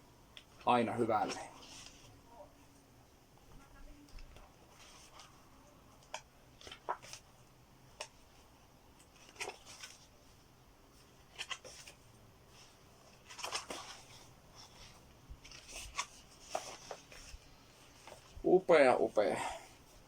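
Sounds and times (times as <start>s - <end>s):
paper and cardboard rustling: 0.6s - 2.2s, 4.2s - 5.4s, 6.0s - 7.4s, 8.0s - 18.4s.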